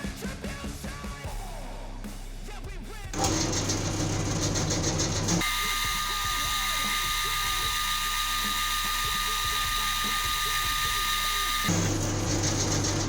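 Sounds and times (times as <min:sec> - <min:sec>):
music: 0:00.0 - 0:13.0
machine tool whining and humming: 0:03.2 - 0:13.0.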